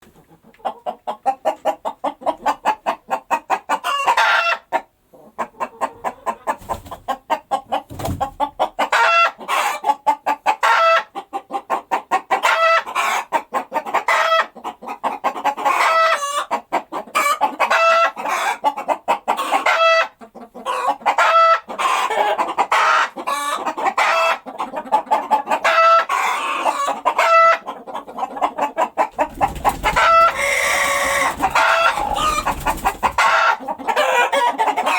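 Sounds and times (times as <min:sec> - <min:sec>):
hens clucking: 0:00.0 - 0:34.9
hen cackling call: 0:29.8 - 0:34.9.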